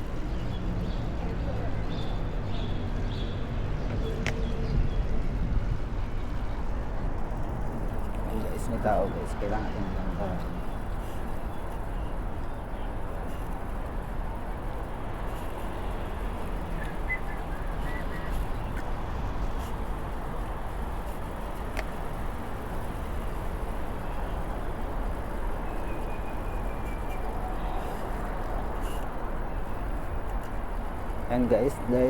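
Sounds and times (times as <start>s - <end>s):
road rumble: 0.0s - 32.0s.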